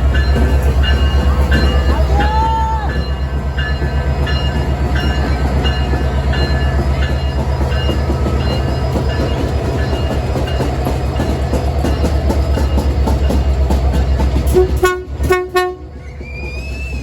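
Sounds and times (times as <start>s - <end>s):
rail clatter: 0.0s - 17.0s
train rumbling past: 0.0s - 17.0s.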